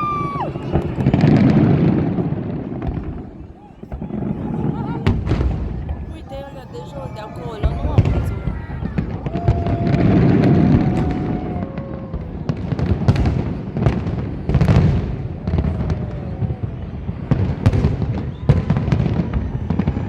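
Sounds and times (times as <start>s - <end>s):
faint firework whistling: 0.0s - 20.0s.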